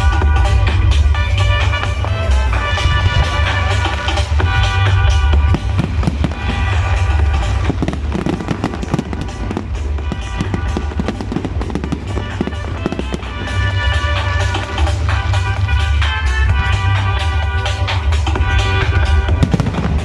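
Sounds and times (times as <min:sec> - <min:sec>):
fireworks bangs and crackles: 0:00.0 - 0:20.0
loud music with heavy bass: 0:00.0 - 0:20.0.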